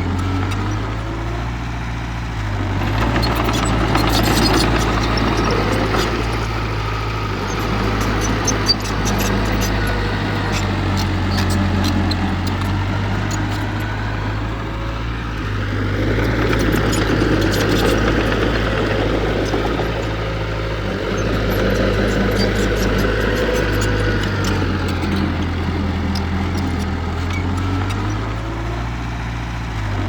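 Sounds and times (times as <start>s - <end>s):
diesel engine droning: 0.0s - 30.0s.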